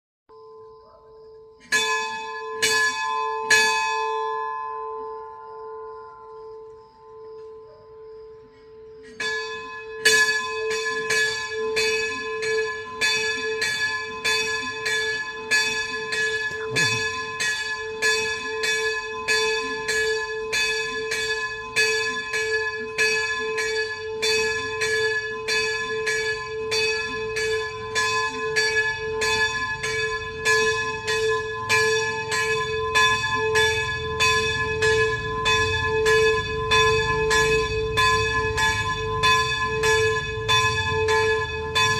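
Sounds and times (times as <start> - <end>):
church bell ringing: 0.4 - 41.9.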